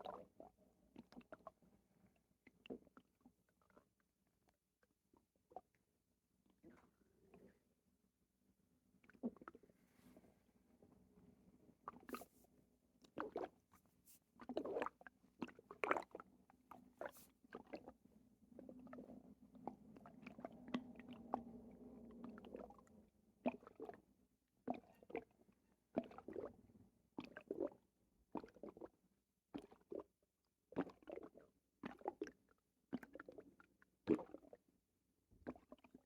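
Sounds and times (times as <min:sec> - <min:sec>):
watery bowel gurgling: 0:09.0 - 0:09.7, 0:13.0 - 0:13.7, 0:14.4 - 0:16.3, 0:16.9 - 0:18.0, 0:18.6 - 0:24.1, 0:24.7 - 0:25.4, 0:26.0 - 0:26.5, 0:27.2 - 0:29.0, 0:30.7 - 0:34.6, 0:35.4 - 0:36.0.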